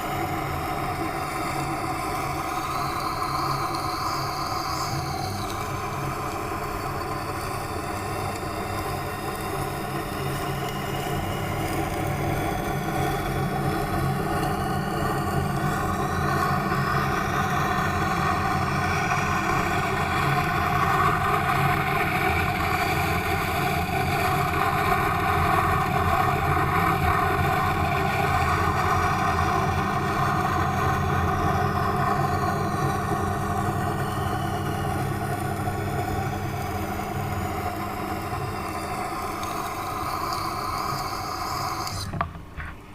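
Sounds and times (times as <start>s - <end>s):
sharpening machine motor hum: 31.3s - 42.4s.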